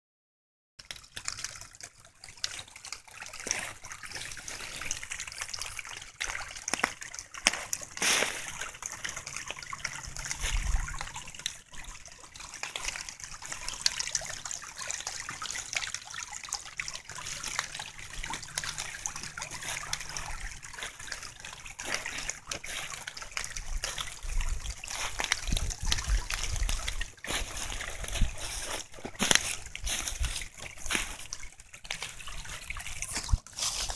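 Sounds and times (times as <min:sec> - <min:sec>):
creek trickling and splashing: 0:00.8 - 0:33.9.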